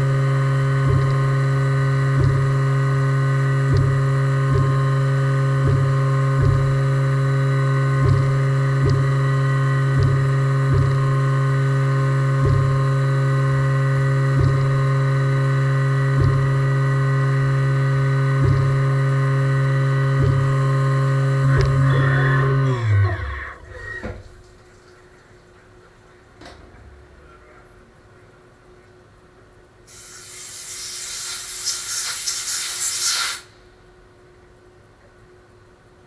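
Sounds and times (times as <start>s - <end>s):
milling machine humming: 0.0s - 25.0s
brief low thumps: 0.8s - 1.3s, 2.2s - 2.6s, 3.7s - 5.0s, 5.6s - 7.0s, 8.0s - 9.3s, 9.9s - 11.3s, 12.4s - 13.0s, 14.3s - 15.0s, 16.1s - 16.7s, 18.4s - 18.9s, 20.1s - 20.7s.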